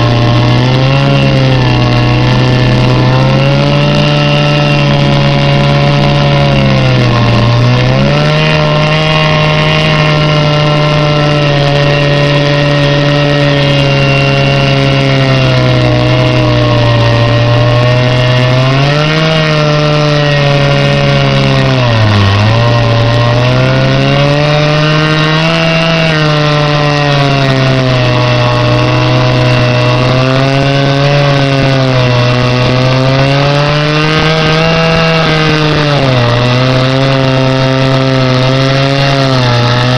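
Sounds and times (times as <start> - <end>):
chainsaw ripping boards: 0.0 - 39.9.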